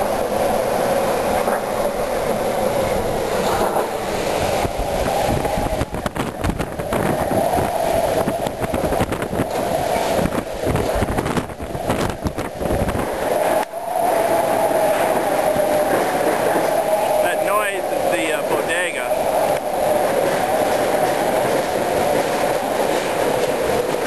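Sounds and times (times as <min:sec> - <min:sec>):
strong gusting wind: 0:00.0 - 0:24.0
wind buffeting microphone: 0:00.0 - 0:24.0.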